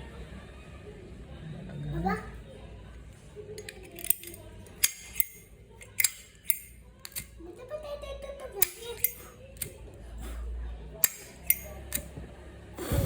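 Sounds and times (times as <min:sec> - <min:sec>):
lighter lid clicking open and shut: 0:03.6 - 0:07.3, 0:08.6 - 0:09.8, 0:11.0 - 0:12.1.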